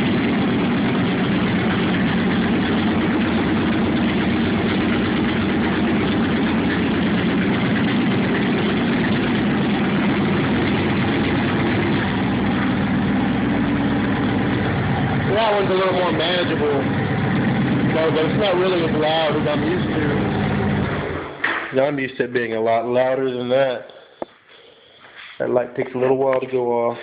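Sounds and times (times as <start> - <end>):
motorcycle engine idling: 0.0 - 21.4.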